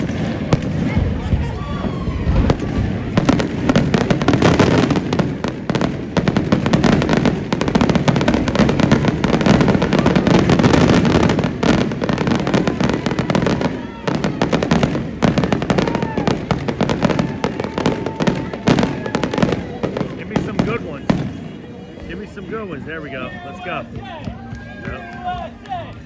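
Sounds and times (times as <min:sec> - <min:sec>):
low rumble: 0:00.0 - 0:04.6
fireworks bangs and crackles: 0:00.0 - 0:26.0.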